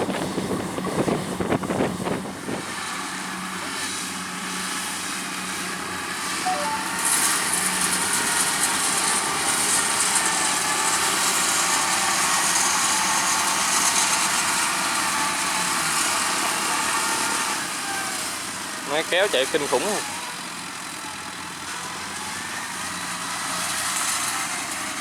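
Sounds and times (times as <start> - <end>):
farm machinery engine running: 7.1 - 25.0.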